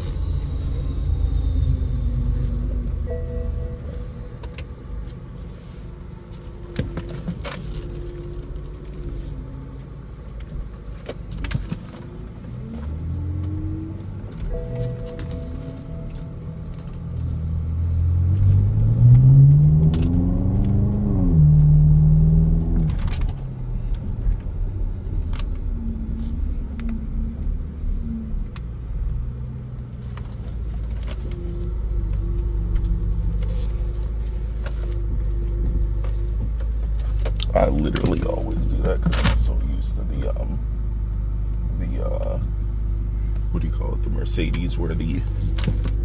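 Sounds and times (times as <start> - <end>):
car engine accelerating: 0.0 - 46.0.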